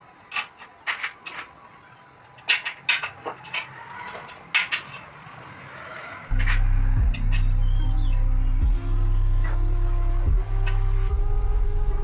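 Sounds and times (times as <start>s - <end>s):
sharp knocks and clatters: 0.0s - 7.6s
low background noise: 0.0s - 12.0s
music with heavy bass beat: 6.3s - 12.0s.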